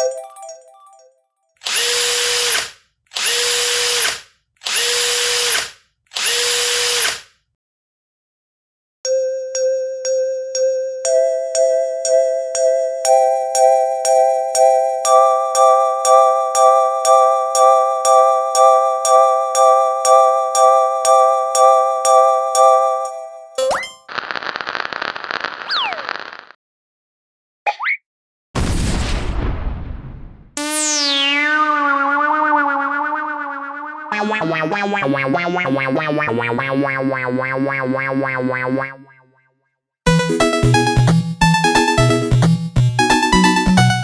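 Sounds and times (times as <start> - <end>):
harsh cartoon buzzes: 24.1 - 26.5.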